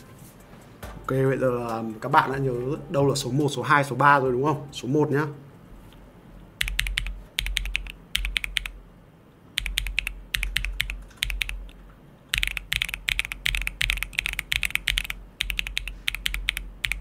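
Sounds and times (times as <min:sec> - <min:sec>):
typing on mechanical keyboard: 0:06.6 - 0:08.8, 0:09.6 - 0:11.7, 0:12.3 - 0:17.0.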